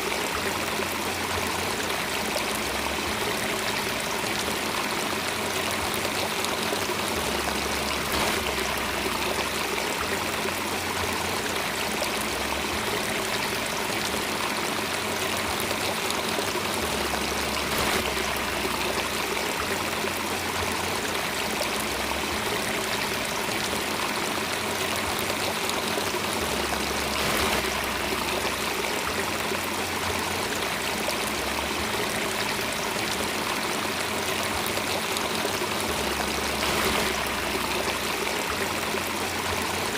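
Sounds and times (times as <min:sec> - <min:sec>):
stream water running: 0:00.0 - 0:39.9.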